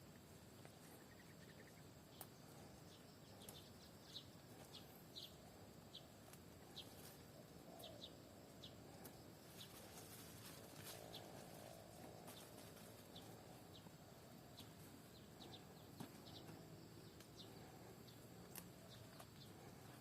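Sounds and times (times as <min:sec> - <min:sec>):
faint high bird chirps: 0:00.8 - 0:13.9.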